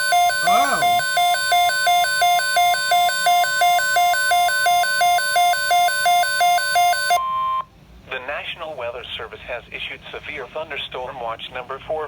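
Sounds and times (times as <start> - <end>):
steady alarm tone: 0.0 - 7.2
two-tone alert beeping: 0.0 - 7.6.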